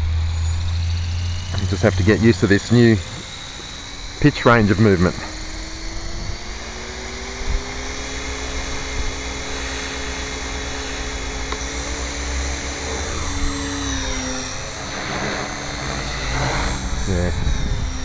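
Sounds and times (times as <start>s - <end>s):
rc helicopter motor and rotor whine: 0.0s - 18.0s
low rumble: 10.5s - 18.0s.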